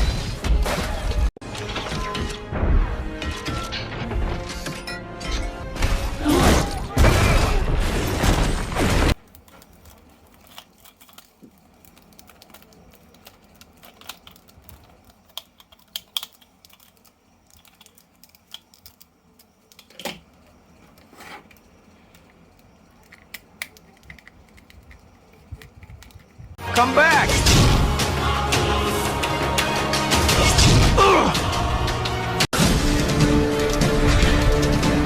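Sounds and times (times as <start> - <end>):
plastic toys clicking and tapping: 9.2 - 26.6.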